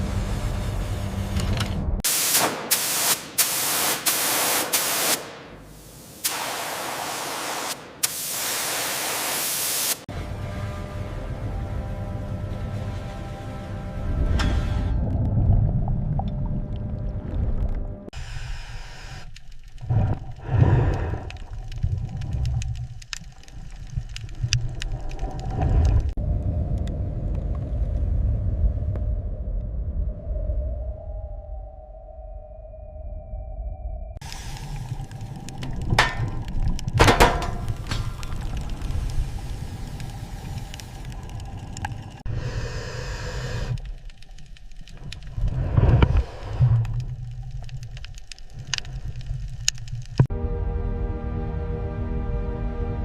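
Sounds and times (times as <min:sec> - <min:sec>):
bursts of hissing: 0:02.1 - 0:10.1
clicks and ticks: 0:43.7 - 0:50.3.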